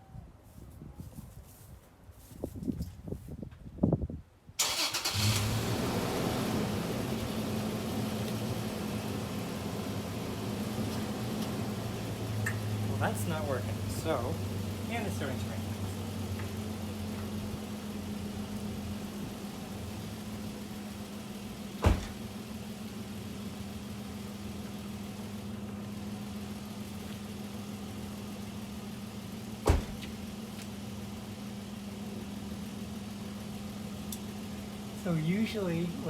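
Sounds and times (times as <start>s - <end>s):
vehicle engine idling: 4.6s - 36.0s.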